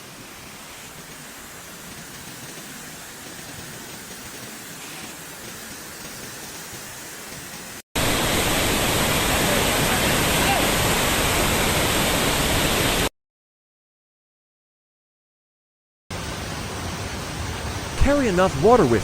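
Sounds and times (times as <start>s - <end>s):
flowing water rushing: 8.0s - 13.1s, 16.2s - 19.0s.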